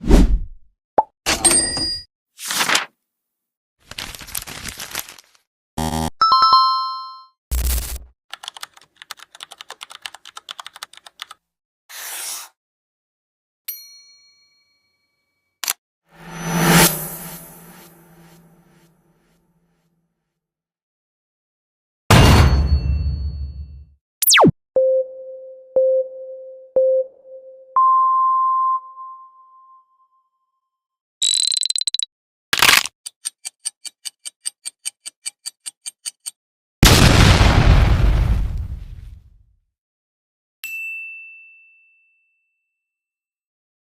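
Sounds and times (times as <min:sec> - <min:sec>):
rapid keyboard typing: 0:03.9 - 0:05.2, 0:08.3 - 0:11.4
electronic countdown beeps: 0:24.2 - 0:29.4.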